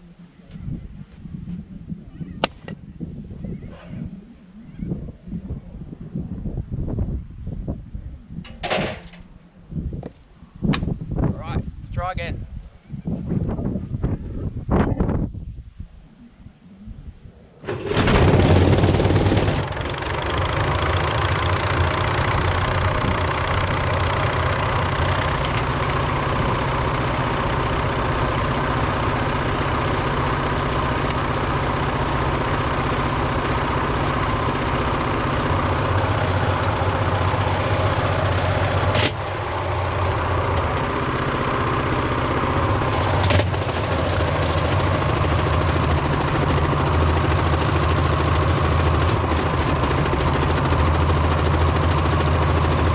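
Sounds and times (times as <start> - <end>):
washing machine churning rattle: 17.6 - 28.6, 29.8 - 52.9.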